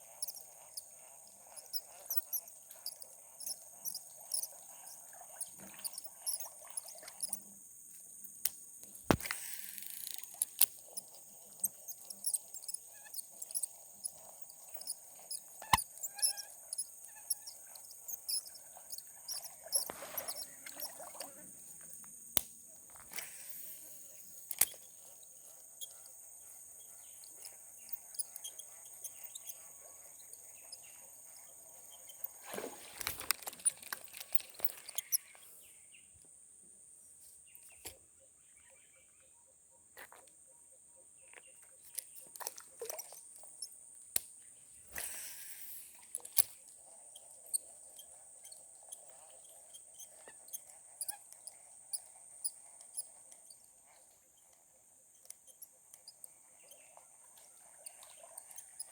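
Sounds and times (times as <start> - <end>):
crickets and insects trilling: 0.0 - 36.1
sharp clicks and knocks: 8.5 - 10.8.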